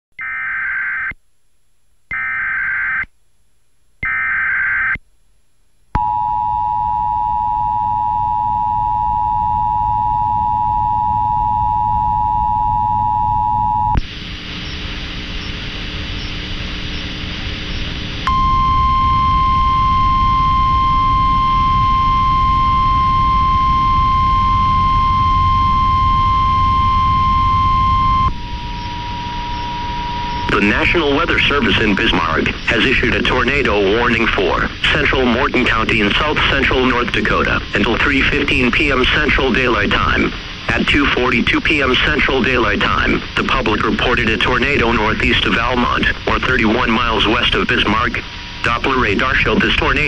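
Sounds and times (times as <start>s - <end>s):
steady single-pitch alert tone: 6.0s - 14.0s, 18.3s - 32.3s
radio hiss: 13.7s - 50.0s
two-tone attention signal: 18.3s - 31.9s
digital data bursts: 18.3s - 34.3s.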